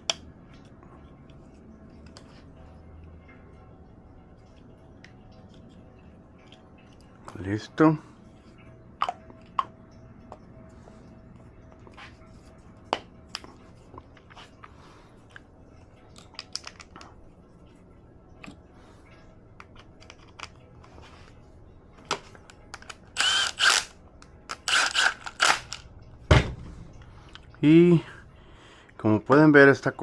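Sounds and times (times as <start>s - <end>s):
small parts and tools clicking: 22.1s - 25.9s
small power tool running: 23.2s - 23.9s, 24.6s - 25.8s.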